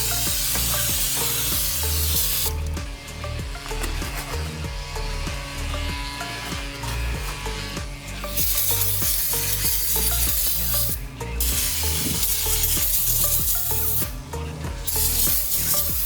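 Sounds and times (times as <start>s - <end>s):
loud steady hiss: 0.0s - 2.7s, 8.2s - 14.1s, 14.9s - 16.0s
background music with bass line: 0.0s - 16.0s.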